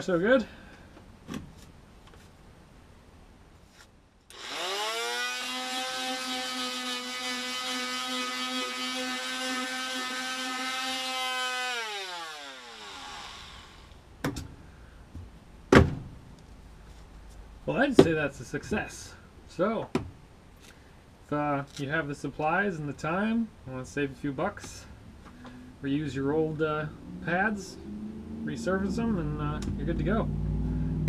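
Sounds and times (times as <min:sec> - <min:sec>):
oscillating multi-tool sanding: 0:04.3 - 0:13.9.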